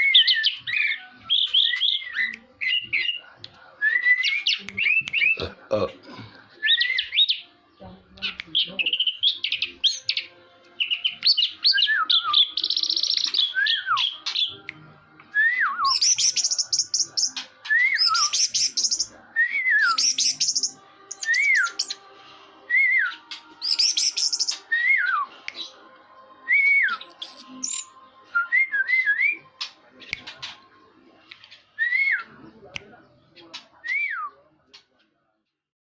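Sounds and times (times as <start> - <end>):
thrush singing: 6.6 - 33.0.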